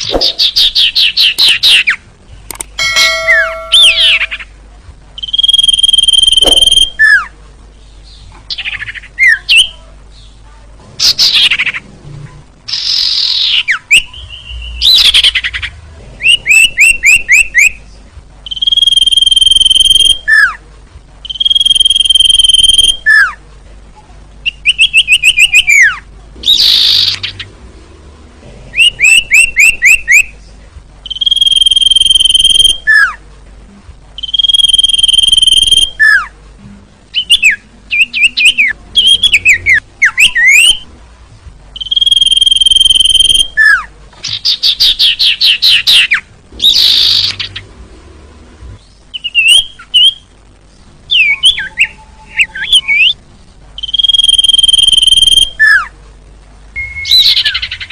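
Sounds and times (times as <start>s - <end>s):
bird calling with whistles: 3.1s - 4.5s, 5.2s - 7.3s, 18.5s - 20.5s, 21.3s - 23.3s, 31.1s - 33.1s, 34.2s - 36.3s, 37.2s - 40.8s, 41.8s - 43.8s, 53.8s - 55.9s, 56.8s - 57.9s.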